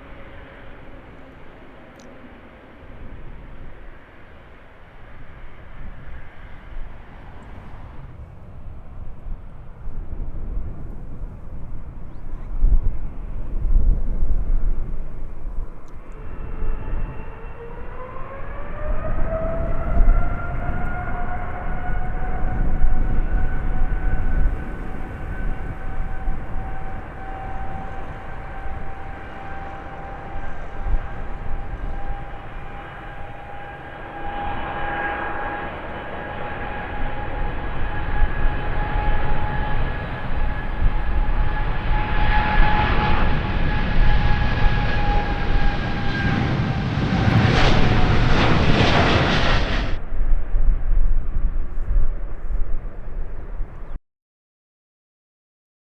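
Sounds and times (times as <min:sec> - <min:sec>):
low rumble: 0:06.6 - 0:53.9
jet engines whining: 0:14.8 - 0:50.1.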